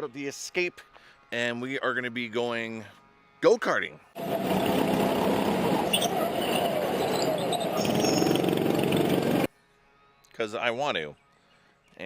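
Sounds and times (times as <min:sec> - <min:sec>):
motor engine running: 0:04.2 - 0:09.5.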